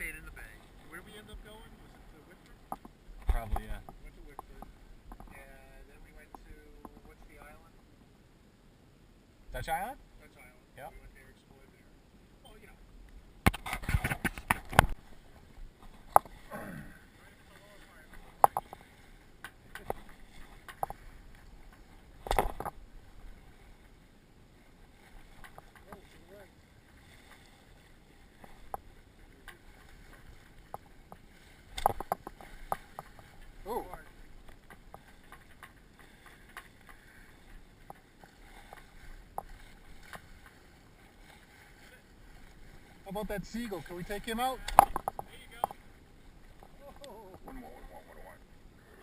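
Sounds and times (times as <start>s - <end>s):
water sloshing against hull: 0.0s - 8.2s, 9.6s - 49.0s
sharp knocks and clicks: 13.4s - 15.0s, 22.2s - 22.8s, 30.7s - 33.2s, 44.6s - 45.8s
small clicks and knocks: 19.4s - 21.0s, 30.7s - 33.2s, 44.6s - 45.8s.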